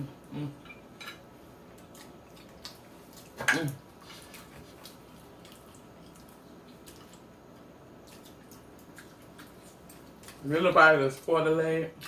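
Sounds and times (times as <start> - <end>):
wet chewing: 1.7 - 10.6.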